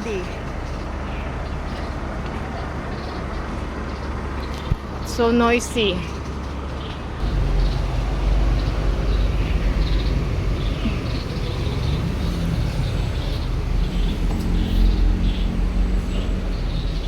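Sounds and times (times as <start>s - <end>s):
birds chirping: 0.0s - 17.0s
steady low rumble: 6.9s - 17.0s.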